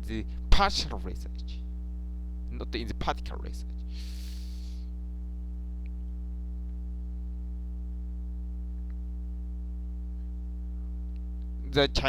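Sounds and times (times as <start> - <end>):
electrical mains hum: 0.0 - 12.0.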